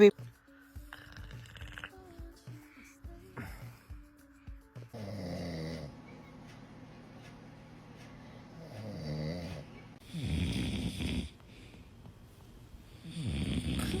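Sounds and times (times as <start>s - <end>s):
man snoring heavily: 4.8s - 6.0s, 8.6s - 11.4s, 13.0s - 14.0s.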